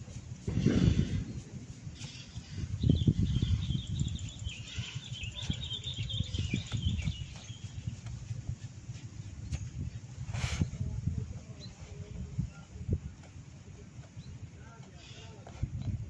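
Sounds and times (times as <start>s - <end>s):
small bird chirping: 1.2s - 9.8s.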